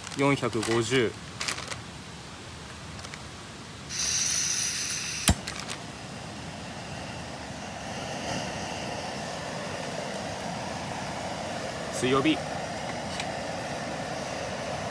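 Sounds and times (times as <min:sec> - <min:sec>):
burner flame: 0:03.0 - 0:14.9
gas hissing: 0:03.9 - 0:14.9
igniter click: 0:05.1 - 0:05.6.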